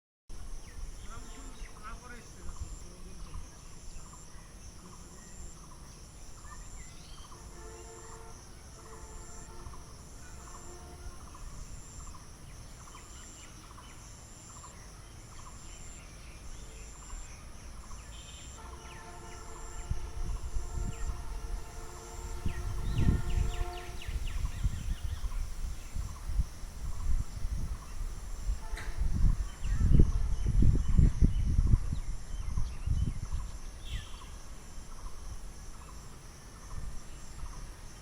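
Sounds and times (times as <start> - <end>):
short repeating bird or insect call: 0.4 - 38.0
droning hum: 18.6 - 24.8
low wind-like rumble: 18.7 - 38.0.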